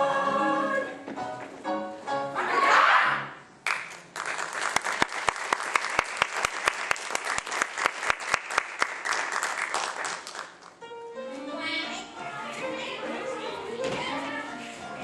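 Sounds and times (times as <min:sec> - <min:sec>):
loud close claps: 0:03.6 - 0:10.8
audience applauding: 0:03.7 - 0:10.7.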